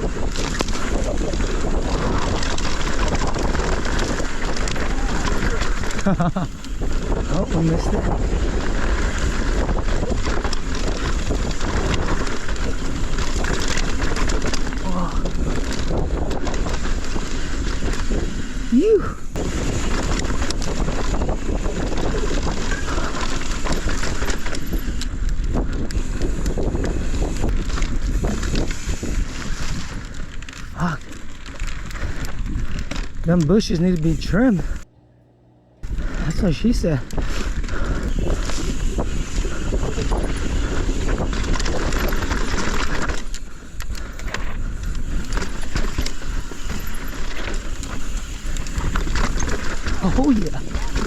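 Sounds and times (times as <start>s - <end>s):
bike rattling over rocks: 0.0s - 34.8s, 35.9s - 51.0s
wind rush on microphone: 0.0s - 34.9s, 35.8s - 51.0s
tyres crunching through dirt: 36.8s - 51.0s.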